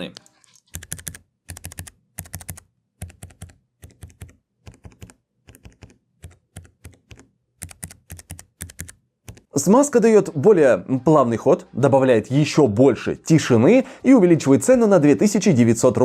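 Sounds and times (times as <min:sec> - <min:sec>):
keyboard keys typing: 0:00.2 - 0:09.6.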